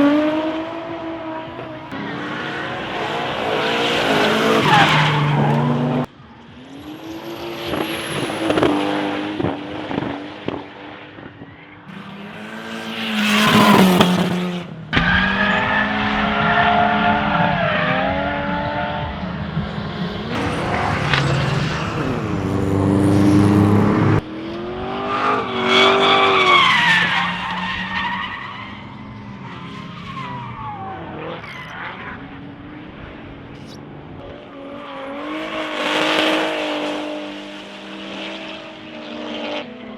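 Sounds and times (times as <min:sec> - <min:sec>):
race car engines revving: 0:00.0 - 0:39.9
tyres skidding and squealing: 0:01.6 - 0:10.1, 0:11.1 - 0:33.9.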